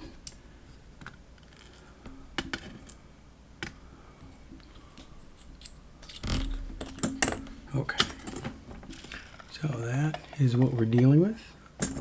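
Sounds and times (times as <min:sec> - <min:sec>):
padlock parts handling noise: 0:01.0 - 0:03.0, 0:04.6 - 0:11.2.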